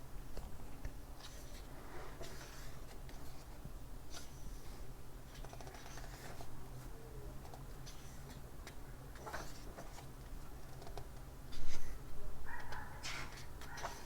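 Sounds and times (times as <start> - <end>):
book pages rustling: 5.3 - 6.5.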